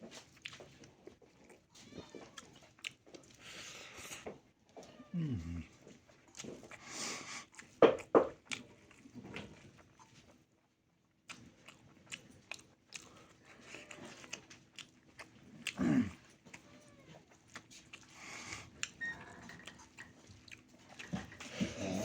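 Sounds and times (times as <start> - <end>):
wet chewing and lip smacks: 0.1 - 3.5, 6.0 - 10.4, 11.2 - 21.7.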